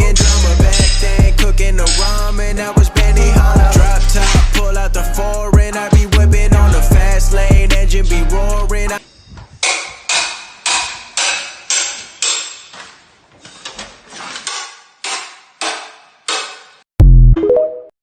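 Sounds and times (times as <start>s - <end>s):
ringing hammer blows: 0.0s - 4.7s, 9.0s - 12.8s.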